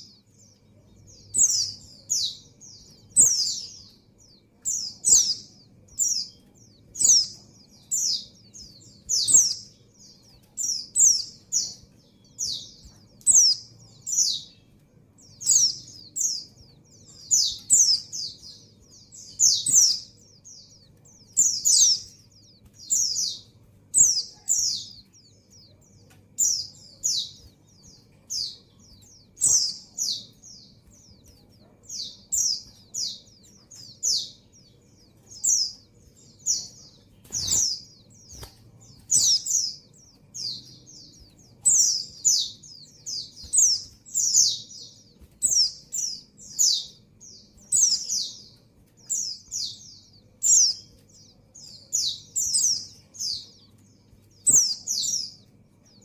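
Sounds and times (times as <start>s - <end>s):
bird calling high-pitched chirps: 0.0s - 56.0s.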